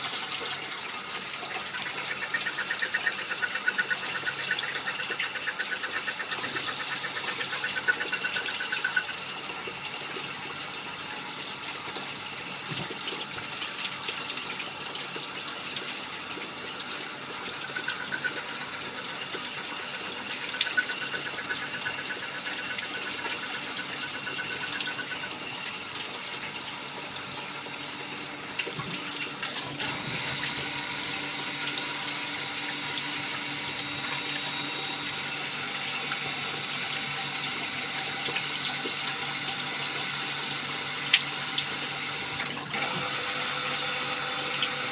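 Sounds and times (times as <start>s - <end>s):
high machine whine: 1.8s - 9.2s, 29.6s - 44.9s.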